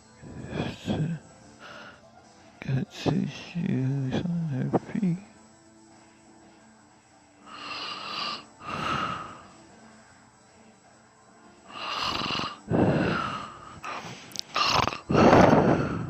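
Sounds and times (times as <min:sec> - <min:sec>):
man snoring: 0:00.2 - 0:01.3, 0:07.5 - 0:09.5, 0:11.7 - 0:16.0.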